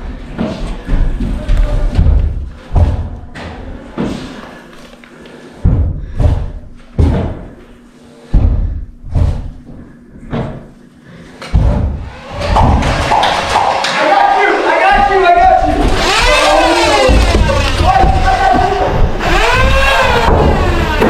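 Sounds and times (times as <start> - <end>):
heavy footsteps on hard floor: 0.0 - 4.4, 5.6 - 7.6, 8.3 - 10.7, 11.5 - 13.8, 14.9 - 21.0.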